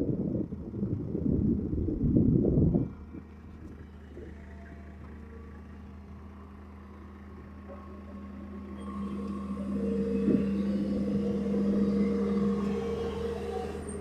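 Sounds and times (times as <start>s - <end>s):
engine humming: 3.0s - 14.0s.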